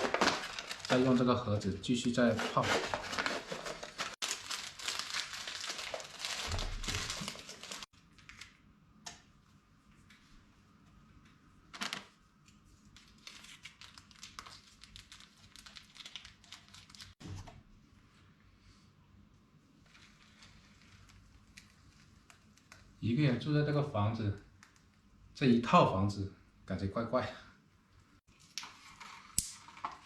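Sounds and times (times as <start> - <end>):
plastic packaging crinkling and tearing: 0.0 - 1.3, 2.1 - 8.6, 13.0 - 17.2, 28.3 - 30.0.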